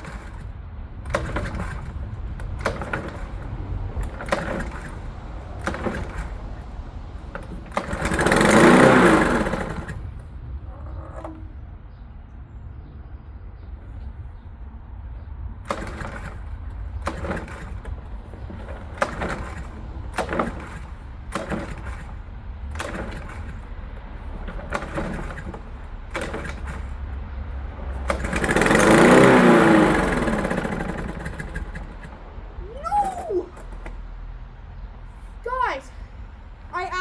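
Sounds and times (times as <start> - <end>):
lawn mower being cranked: 0.0 - 10.2, 15.7 - 27.2, 27.9 - 32.3
lawn mower engine revving: 0.0 - 11.5, 15.6 - 34.1.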